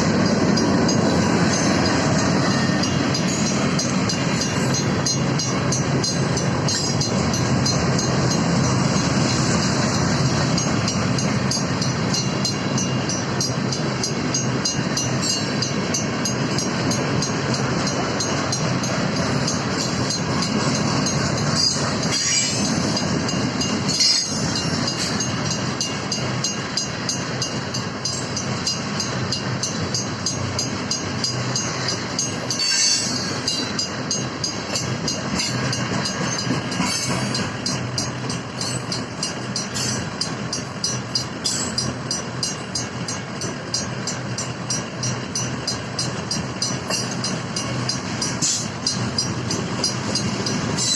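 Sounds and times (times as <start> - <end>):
crossing bells ringing: 0.0 - 50.9
train wheels rumbling on rails: 0.0 - 50.9
wheel squeals and clanks: 21.5 - 23.1, 23.9 - 25.3, 32.5 - 33.8, 34.6 - 37.5, 39.6 - 40.2, 41.4 - 42.0, 46.8 - 47.3, 48.3 - 49.3, 50.0 - 50.9.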